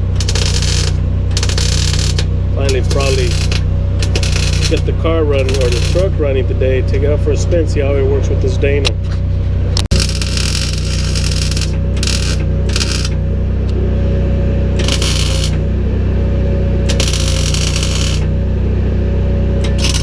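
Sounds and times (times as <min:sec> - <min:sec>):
welding arc crackling: 0:00.0 - 0:07.0, 0:09.8 - 0:13.8, 0:14.8 - 0:15.8, 0:16.9 - 0:18.4, 0:19.6 - 0:20.0
steady low hum: 0:00.0 - 0:20.0.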